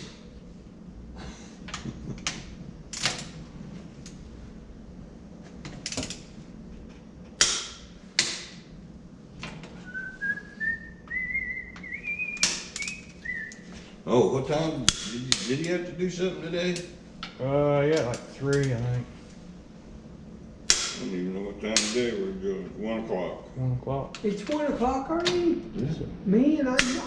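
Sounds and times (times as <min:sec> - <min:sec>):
person whistling a tune: 0:09.8 - 0:13.7
torque wrench clicking: 0:11.8 - 0:13.0.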